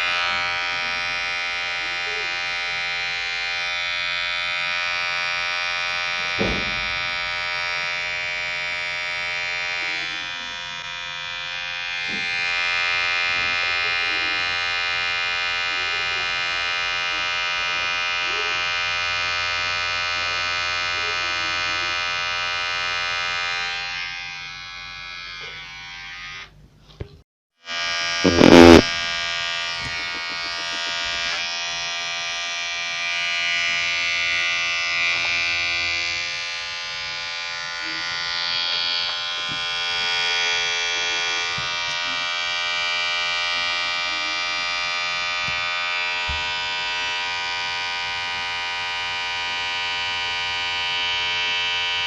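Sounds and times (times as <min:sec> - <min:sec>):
electric hair clipper buzzing: 0:00.0 - 0:26.6, 0:27.6 - 0:52.0
loud knock: 0:06.4 - 0:06.9.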